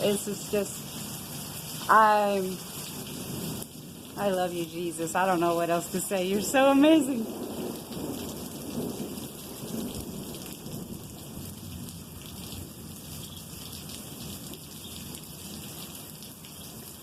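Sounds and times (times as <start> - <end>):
steady rain falling: 0.0 - 17.0
thunder rumbling: 3.0 - 12.9.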